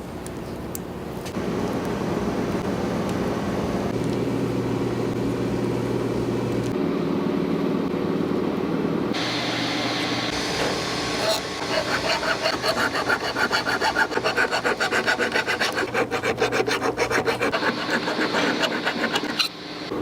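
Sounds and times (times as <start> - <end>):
factory machinery humming: 1.4 - 20.0.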